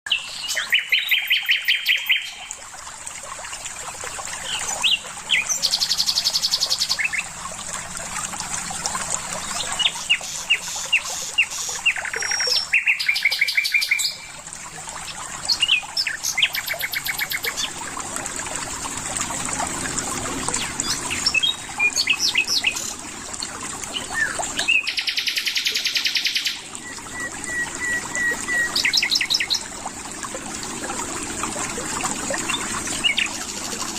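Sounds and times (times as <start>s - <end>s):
songbirds singing and chirping: 0.1s - 2.5s, 9.4s - 14.4s, 15.1s - 17.8s, 20.5s - 23.0s, 23.9s - 29.7s.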